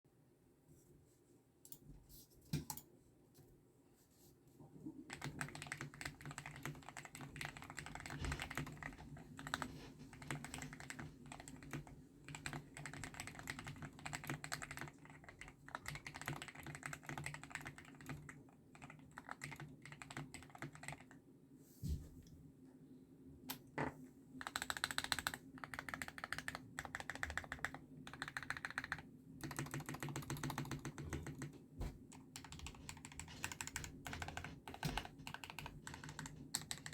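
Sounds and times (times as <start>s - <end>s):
mechanical keyboard typing: 5.1s - 21.2s, 24.4s - 31.5s, 32.1s - 36.9s.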